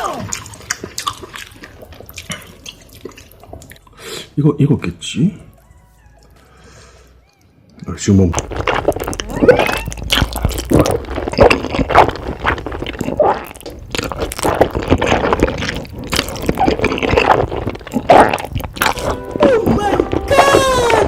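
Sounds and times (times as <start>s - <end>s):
wet chewing and slurping: 0.0s - 4.0s, 5.5s - 20.3s
mouth smacks and clicks: 0.3s - 4.0s, 7.2s - 20.3s.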